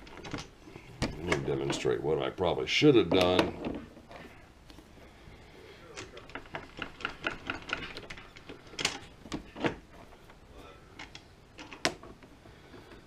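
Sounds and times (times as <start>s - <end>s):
metallic clicks and clanks: 5.9s - 9.8s.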